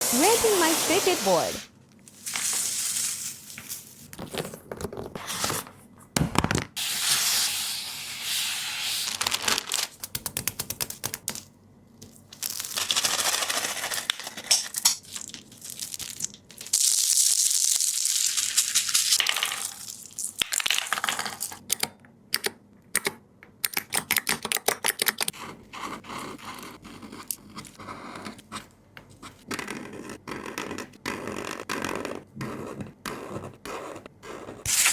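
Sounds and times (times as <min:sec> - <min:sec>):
scratchy tearing noise: 0:34.7 - 0:34.9.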